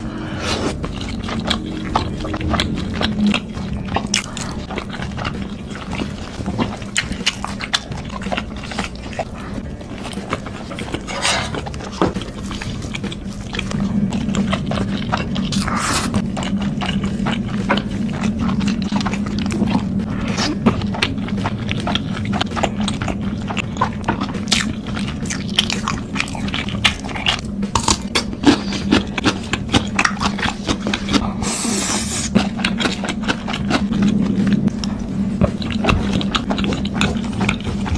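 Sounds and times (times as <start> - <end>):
person slurping noodles: 0.0 - 5.0, 15.3 - 16.3, 31.1 - 32.4
person chewing: 0.0 - 37.9.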